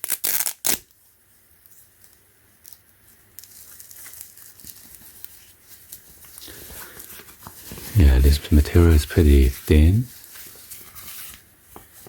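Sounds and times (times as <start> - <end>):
cap rustling and crinkling: 3.4 - 12.0.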